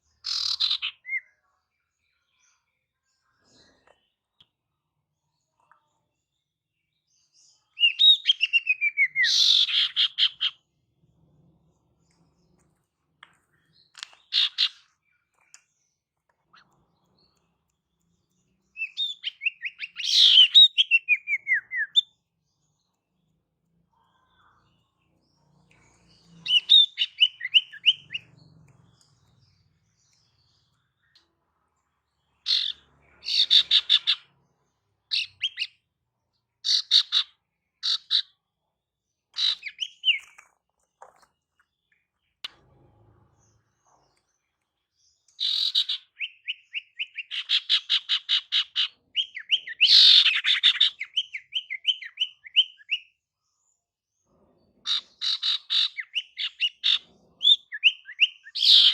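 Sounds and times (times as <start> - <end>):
bird chattering and trilling: 0.2 - 1.3, 7.8 - 10.7, 13.6 - 15.6, 18.4 - 22.2, 26.0 - 29.2, 32.4 - 34.4, 35.0 - 35.9, 36.6 - 38.4, 39.4 - 40.5, 45.4 - 53.2, 54.8 - 58.9.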